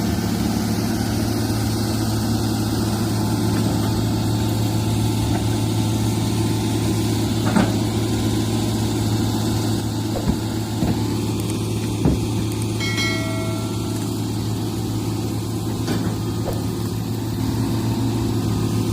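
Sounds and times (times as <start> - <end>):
excavator diesel engine running: 0.0 - 18.9.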